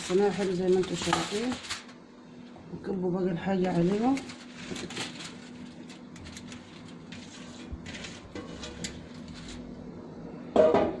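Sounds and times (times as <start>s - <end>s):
vegetables rustling in baking tray: 0.0s - 2.0s, 3.5s - 9.8s
steady low hum: 0.0s - 11.0s.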